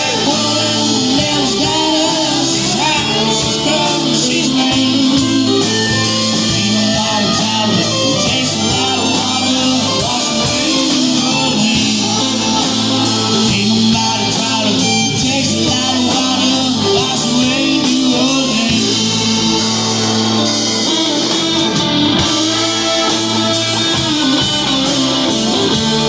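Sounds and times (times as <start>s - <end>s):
guitar lead line: 0.0s - 26.0s
live band playing country music: 0.0s - 26.0s.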